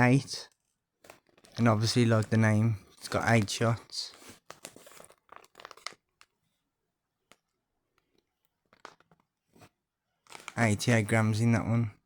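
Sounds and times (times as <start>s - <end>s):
packaging crinkling and rustling: 1.0s - 6.4s, 10.2s - 10.7s.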